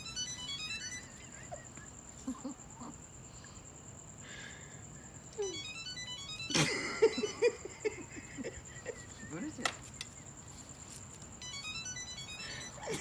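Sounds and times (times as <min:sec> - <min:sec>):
electronic beeping melody: 0:00.0 - 0:01.7, 0:05.4 - 0:07.8, 0:11.4 - 0:13.0.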